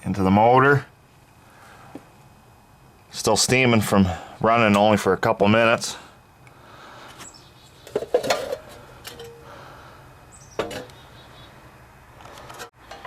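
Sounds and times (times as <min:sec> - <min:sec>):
low steady hum: 0:00.0 - 0:13.0.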